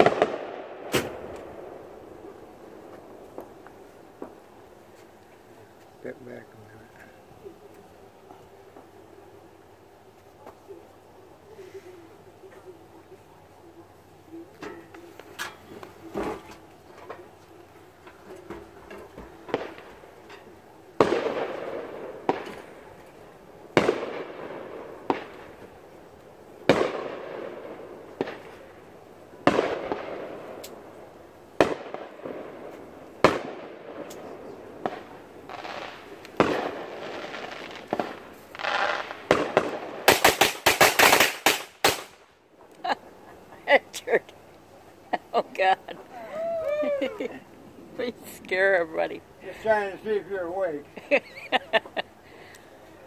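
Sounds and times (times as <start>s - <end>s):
fireworks bangs echoing: 0.0s - 5.0s, 14.3s - 42.4s
fireworks crackling: 0.0s - 53.0s.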